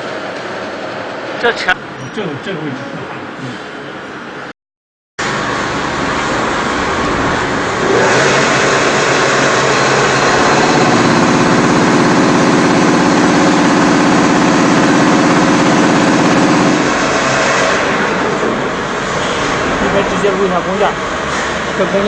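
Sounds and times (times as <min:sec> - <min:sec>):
lathe running: 0:05.2 - 0:22.0.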